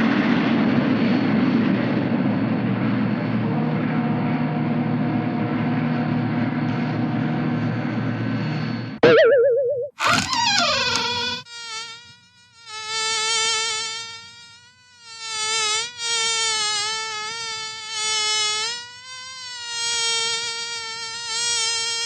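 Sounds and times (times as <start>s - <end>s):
high mosquito-like buzz: 10.0s - 22.0s.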